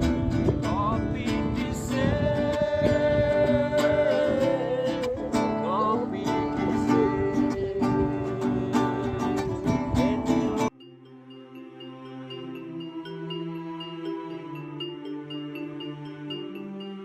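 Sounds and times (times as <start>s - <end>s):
strummed acoustic guitar: 0.0s - 10.7s
sliding melody line: 0.0s - 17.0s.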